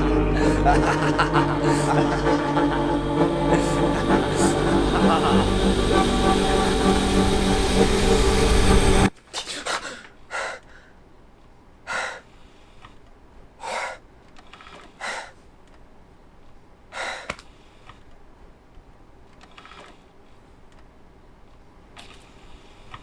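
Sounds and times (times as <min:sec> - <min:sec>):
man breathing hard: 0:00.0 - 0:00.8, 0:09.6 - 0:11.0, 0:11.9 - 0:12.9, 0:13.6 - 0:14.0, 0:14.7 - 0:15.4, 0:16.9 - 0:17.9.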